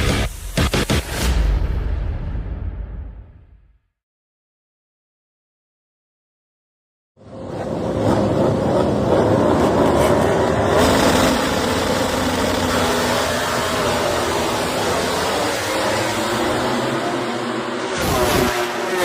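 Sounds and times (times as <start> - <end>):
motorcycle engine at high revs: 8.9 - 19.0.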